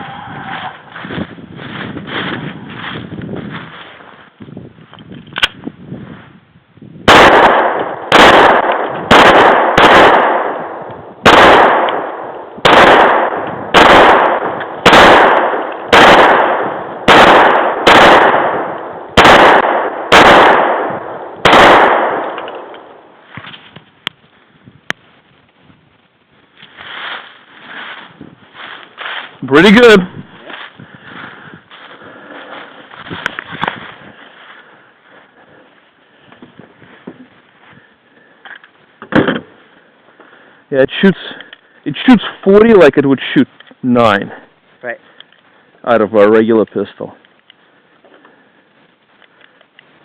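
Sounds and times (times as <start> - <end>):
pistol shots with echo: 7.1 - 23.0.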